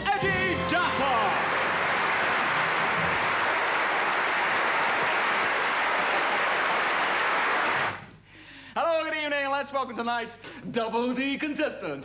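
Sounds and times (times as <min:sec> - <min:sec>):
audience applause: 0:00.7 - 0:08.1.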